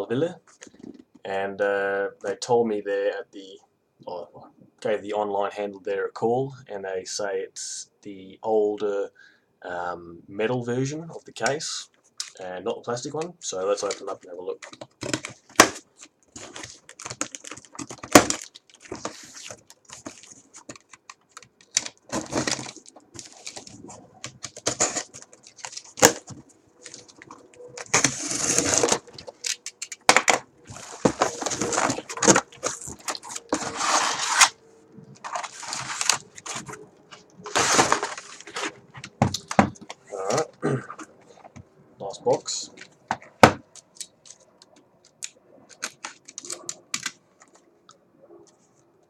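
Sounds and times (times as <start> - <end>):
cardboard rustling and ripping: 14.7 - 40.5
box clicks and knocks: 16.4 - 19.2, 20.0 - 22.8, 23.4 - 33.8, 37.5 - 40.0.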